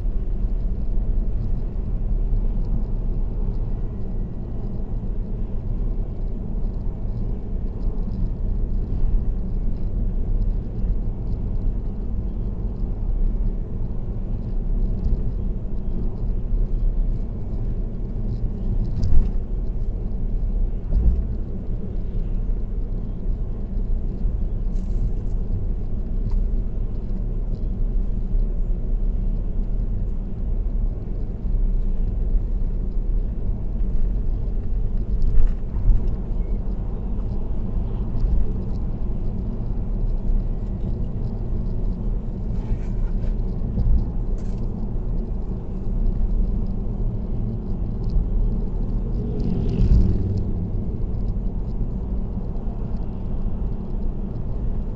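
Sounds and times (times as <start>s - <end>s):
road and tyre noise: 0.0s - 54.9s.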